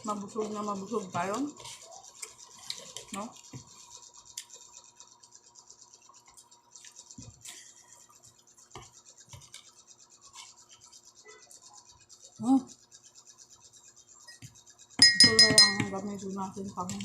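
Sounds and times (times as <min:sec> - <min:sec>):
utensils clicking and knocking: 0:00.0 - 0:04.8, 0:14.3 - 0:17.0.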